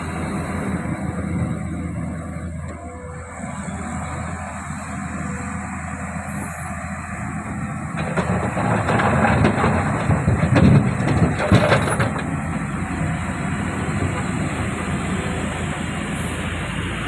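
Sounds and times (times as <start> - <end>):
excavator diesel engine running: 0.0 - 17.0
rock grinding and clattering: 8.0 - 12.3.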